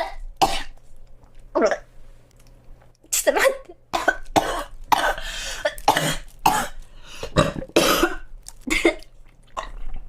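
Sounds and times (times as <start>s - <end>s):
girl coughing: 3.2s - 6.8s, 7.4s - 9.0s.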